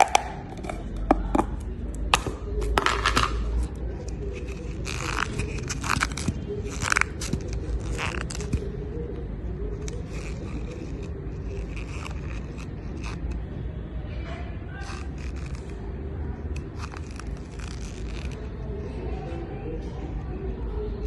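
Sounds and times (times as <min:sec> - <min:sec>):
scraping on a hard surface: 0:00.0 - 0:08.8, 0:09.7 - 0:13.4, 0:14.8 - 0:15.8.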